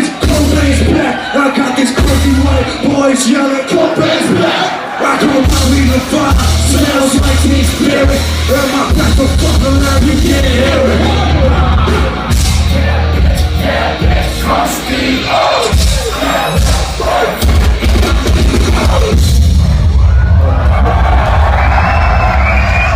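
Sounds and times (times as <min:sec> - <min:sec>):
yelled and sung vocals: 0:00.0 - 0:19.7
heavy booming bass: 0:05.4 - 0:14.6, 0:15.7 - 0:21.8.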